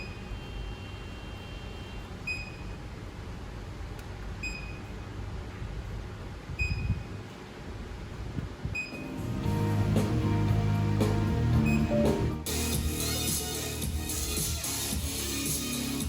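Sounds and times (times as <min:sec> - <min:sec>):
short electronic beeps: 0:02.3 - 0:02.8, 0:06.6 - 0:07.0.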